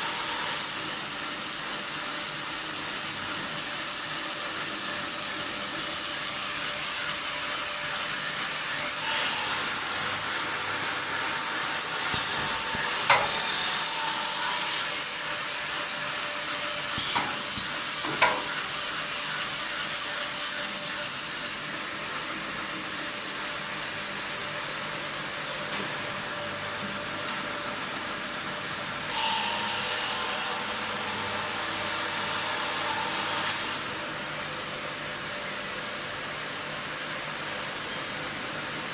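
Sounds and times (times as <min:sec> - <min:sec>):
machine whirring: 0:08.1 - 0:20.1, 0:29.1 - 0:34.5
high-pitched machine whine: 0:28.0 - 0:35.5.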